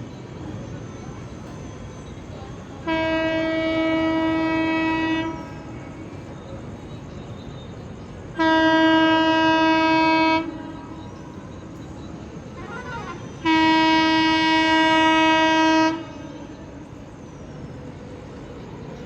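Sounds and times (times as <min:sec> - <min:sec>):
train running noise: 0:00.0 - 0:19.0
locomotive air horn blasts: 0:02.8 - 0:05.5, 0:08.4 - 0:10.6, 0:13.4 - 0:16.2.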